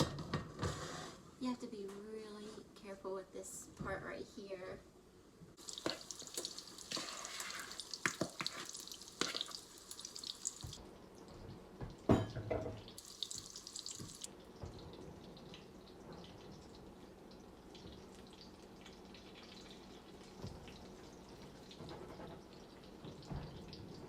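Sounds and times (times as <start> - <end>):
batter sizzling in hot oil: 5.6 - 10.8, 12.9 - 23.9
knock on skillet: 11.8 - 12.9.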